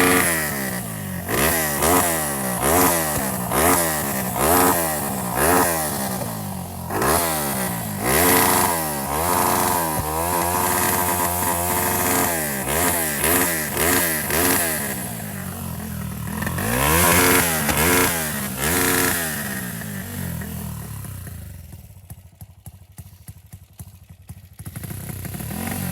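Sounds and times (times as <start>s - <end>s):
motorcycle engine revving: 0.0s - 25.9s.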